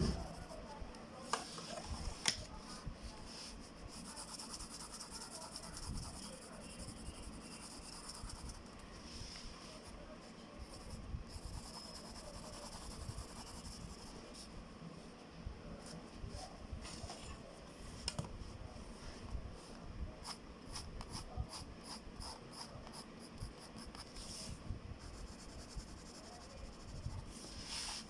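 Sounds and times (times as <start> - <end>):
pencil scratching on paper: 0.0 - 0.8, 3.4 - 8.7, 10.6 - 14.2, 20.2 - 28.0.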